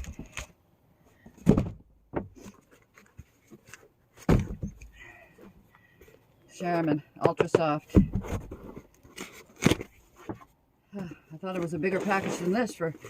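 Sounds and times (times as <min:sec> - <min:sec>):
cardboard rustling: 0:01.2 - 0:06.2, 0:07.9 - 0:10.6, 0:11.4 - 0:13.0
cardboard box thumps: 0:01.4 - 0:02.6, 0:04.2 - 0:04.8, 0:07.3 - 0:08.8.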